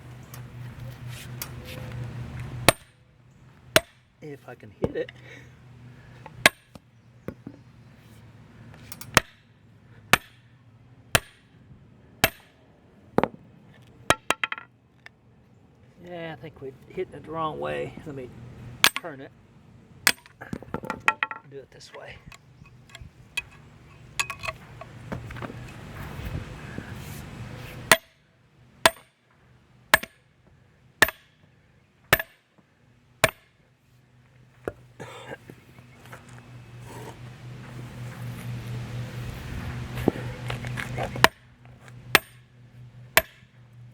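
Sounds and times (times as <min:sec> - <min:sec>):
sledgehammer striking metal: 0:02.6 - 0:03.0, 0:03.8 - 0:04.1, 0:06.4 - 0:06.8, 0:09.1 - 0:09.5, 0:10.1 - 0:10.4, 0:11.2 - 0:11.4, 0:12.2 - 0:12.6, 0:27.9 - 0:28.2, 0:28.8 - 0:29.2, 0:30.0 - 0:30.3, 0:31.0 - 0:31.4, 0:32.1 - 0:32.4, 0:33.2 - 0:33.6, 0:42.1 - 0:42.5, 0:43.2 - 0:43.6.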